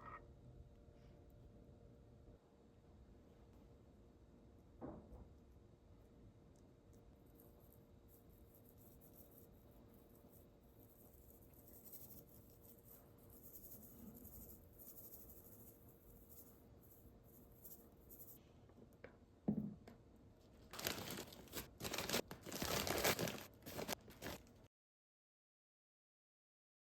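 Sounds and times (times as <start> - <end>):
packaging crinkling and tearing: 20.8 - 24.7.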